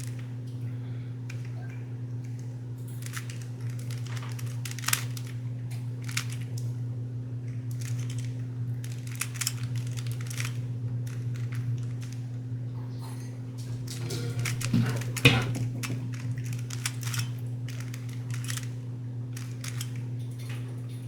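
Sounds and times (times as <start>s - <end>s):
steady low hum: 0.0s - 21.0s
puzzle cube clicking and scraping: 3.0s - 5.3s, 8.9s - 10.5s
sharp plastic clack: 13.9s - 18.6s.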